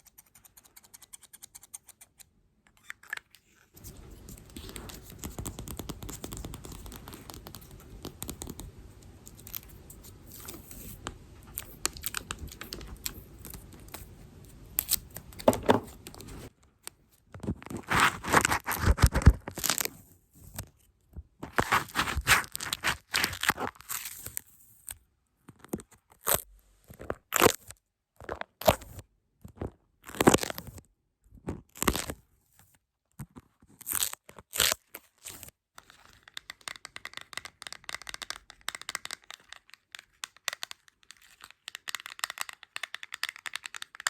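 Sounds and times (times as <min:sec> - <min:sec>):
scratchy rubbing: 0:17.7 - 0:19.1.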